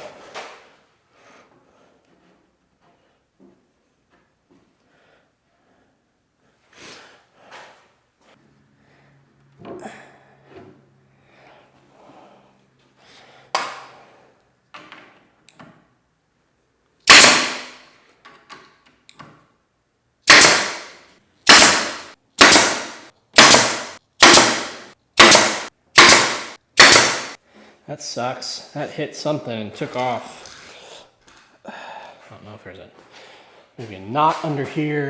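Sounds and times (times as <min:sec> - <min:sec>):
nail gun firing into wood: 0:17.1 - 0:17.9, 0:20.3 - 0:27.4.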